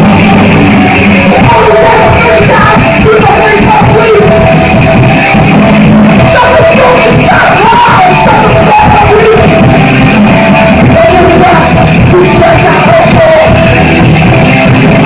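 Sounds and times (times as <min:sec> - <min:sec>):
punk band playing live: 0:00.0 - 0:15.0
person yelling vocals: 0:01.4 - 0:04.4, 0:06.3 - 0:09.5.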